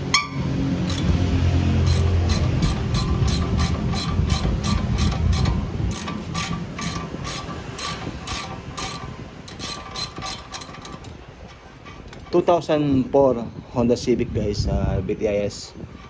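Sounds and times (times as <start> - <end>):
ratchet wrench clicking: 0.0 - 12.4.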